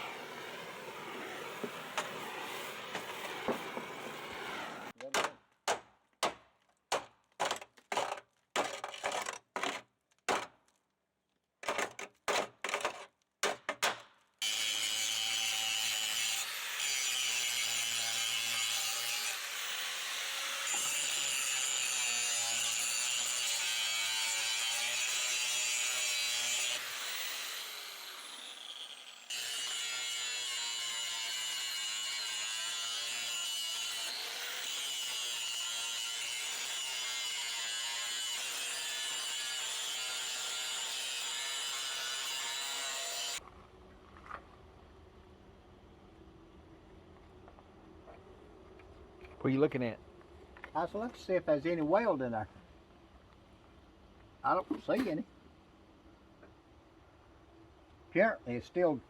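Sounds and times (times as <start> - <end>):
power grinder whining: 0.0 - 5.0, 14.4 - 43.4.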